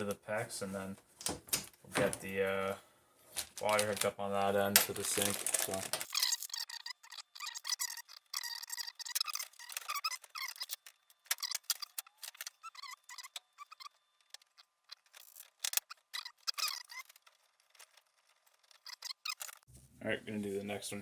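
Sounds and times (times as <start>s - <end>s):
ball valve clicks and squeaks: 6.0s - 19.7s.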